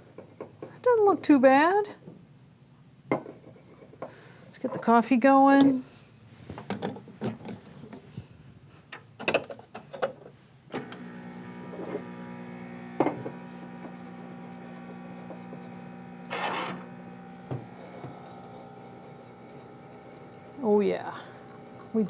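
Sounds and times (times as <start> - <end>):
espresso machine pump humming: 10.8 - 22.0.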